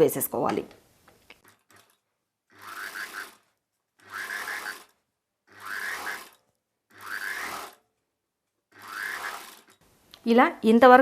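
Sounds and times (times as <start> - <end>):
sewing machine stitching: 1.4 - 8.0, 8.7 - 9.8.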